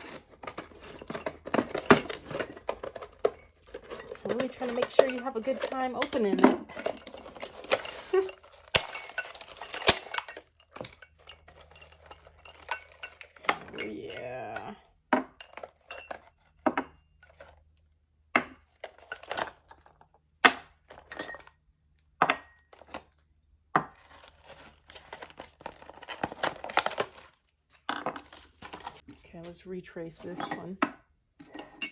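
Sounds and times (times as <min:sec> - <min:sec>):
small metal pieces clinking: 0:00.0 - 0:14.8.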